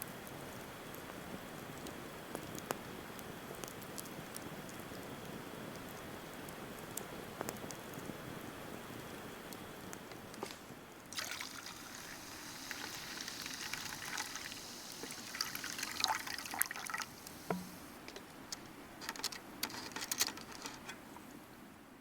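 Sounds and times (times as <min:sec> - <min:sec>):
campfire crackling and popping: 0:00.0 - 0:20.9.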